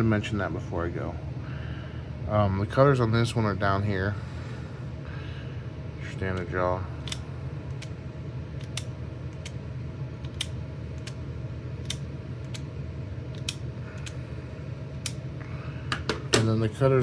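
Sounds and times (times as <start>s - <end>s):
steady low hum: 0.0s - 17.0s
wire strippers clicking: 8.6s - 9.6s, 13.3s - 14.2s.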